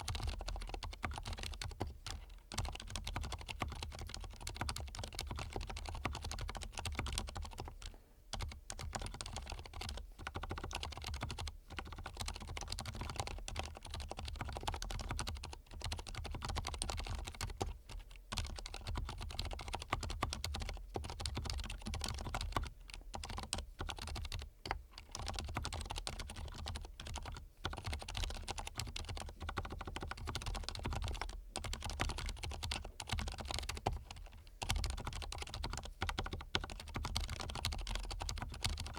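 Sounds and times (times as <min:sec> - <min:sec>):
fast typing on a keyboard: 0:00.0 - 0:38.9.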